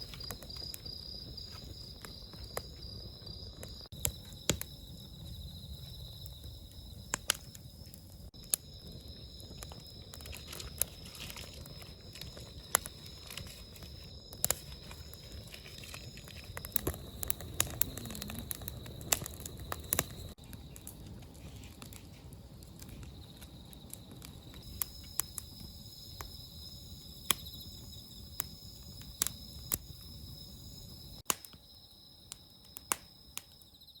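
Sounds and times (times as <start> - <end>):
bonfire crackling and popping: 0.0 - 33.9
insects trilling: 0.0 - 34.0.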